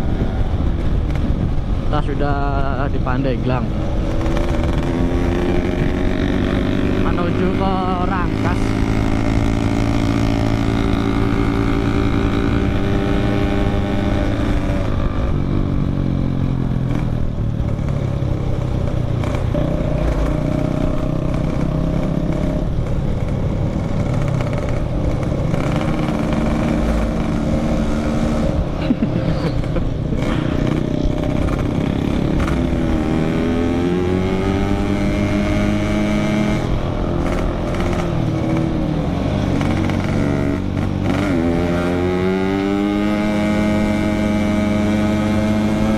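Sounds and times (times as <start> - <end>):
two-stroke motorcycle engine revving: 2.0 - 45.9.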